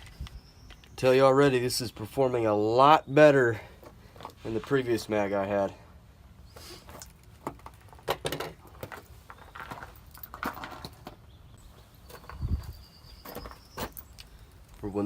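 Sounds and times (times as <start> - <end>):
handling clicks and knocks: 7.0 - 11.2.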